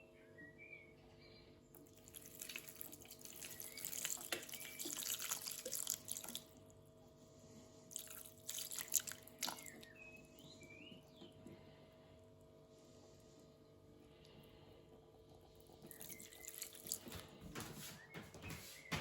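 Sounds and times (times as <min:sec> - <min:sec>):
water splashing and dripping: 0:01.8 - 0:06.6, 0:07.9 - 0:09.9, 0:15.8 - 0:19.0
birds chirping: 0:09.3 - 0:12.2, 0:13.6 - 0:19.0.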